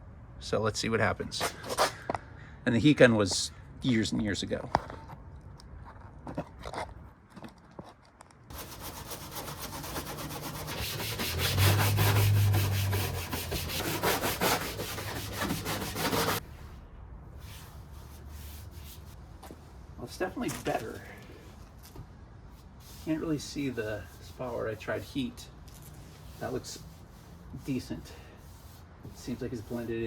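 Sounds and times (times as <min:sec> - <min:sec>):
brush scrubbing plastic: 0:08.5 - 0:16.4, 0:26.2 - 0:30.0.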